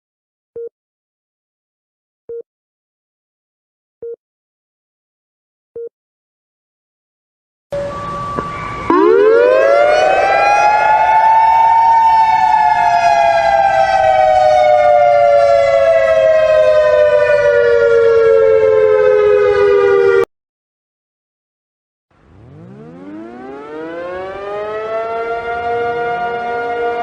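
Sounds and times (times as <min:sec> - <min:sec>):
warning siren winding: 0:22.4 - 0:27.0.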